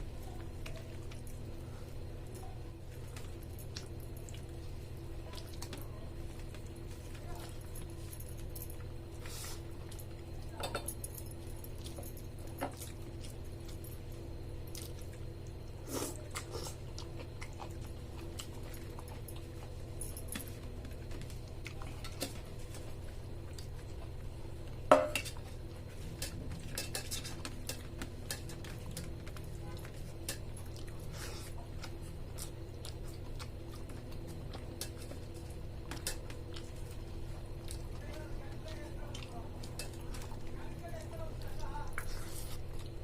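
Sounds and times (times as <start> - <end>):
steady low hum: 0.0 - 43.0
clinks and knocks on a plate: 10.6 - 11.0, 24.9 - 25.4
person chewing: 14.7 - 40.6.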